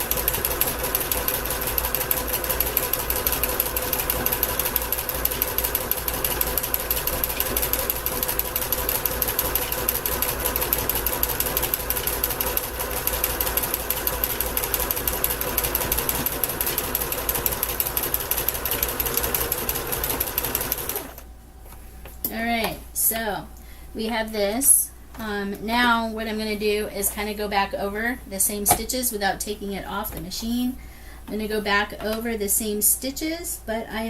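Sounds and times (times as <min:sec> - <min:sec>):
sewing machine stitching: 0:00.0 - 0:21.2.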